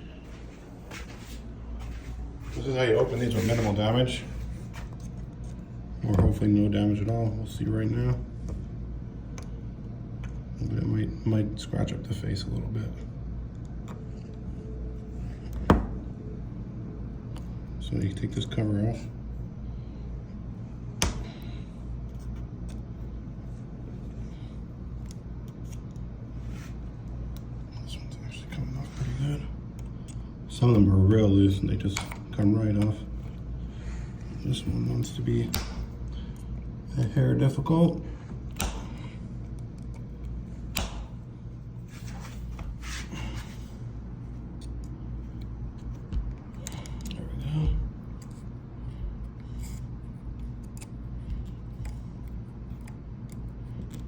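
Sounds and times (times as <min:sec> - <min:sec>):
steady low hum: 0:00.0 - 0:54.0.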